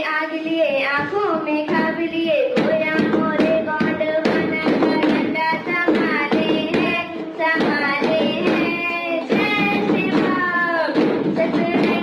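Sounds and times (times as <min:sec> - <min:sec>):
rhythmic hand taps: 0:00.9 - 0:12.0
person singing: 0:01.0 - 0:12.0.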